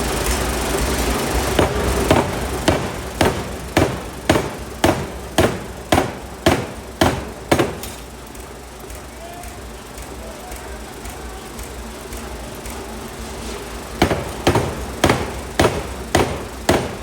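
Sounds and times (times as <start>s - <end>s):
machinery humming: 0.0s - 17.0s
power hammer striking hot steel: 1.5s - 8.2s, 13.4s - 17.0s.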